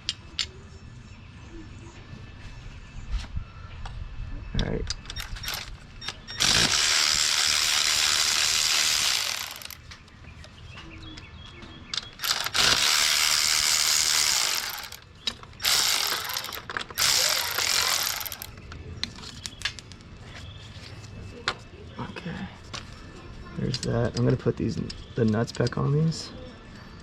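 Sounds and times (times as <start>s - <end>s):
ratchet wrench clicking: 5.1s - 9.8s, 12.2s - 15.0s, 15.6s - 18.5s.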